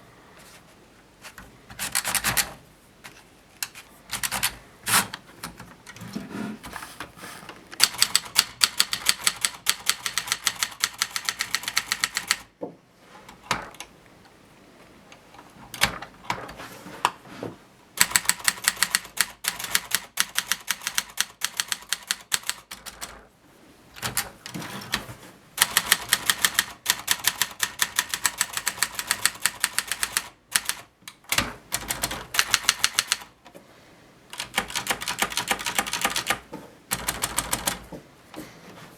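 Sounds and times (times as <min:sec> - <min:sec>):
typewriter key strikes: 0:07.8 - 0:12.4, 0:18.0 - 0:23.1, 0:25.6 - 0:33.3.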